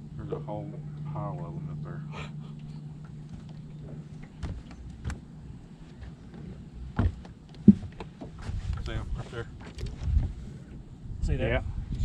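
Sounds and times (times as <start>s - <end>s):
knocks on boat: 3.3s - 5.3s, 6.0s - 8.6s.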